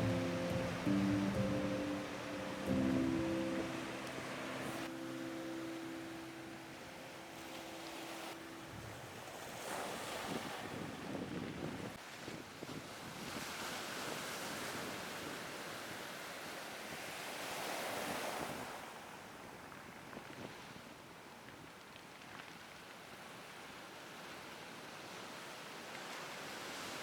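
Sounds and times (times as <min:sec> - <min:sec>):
sea waves washing onto shore: 0:00.0 - 0:20.1.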